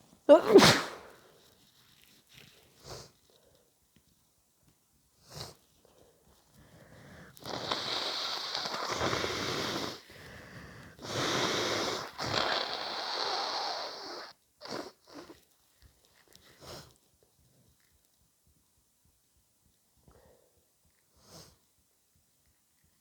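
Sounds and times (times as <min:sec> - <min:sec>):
person blowing nose: 0:00.3 - 0:01.2, 0:07.4 - 0:15.4
person sniffing: 0:00.3 - 0:01.3, 0:06.7 - 0:15.3.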